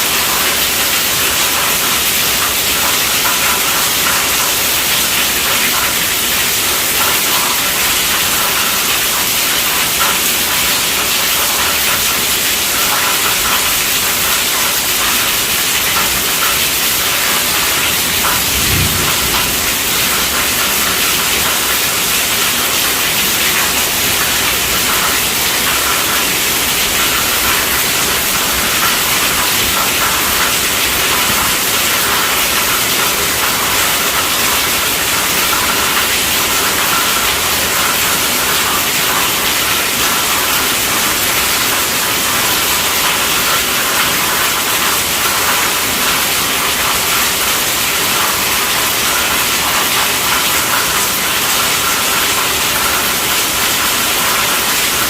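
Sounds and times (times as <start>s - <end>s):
heavy rain on tent roof: 0.0s - 55.0s.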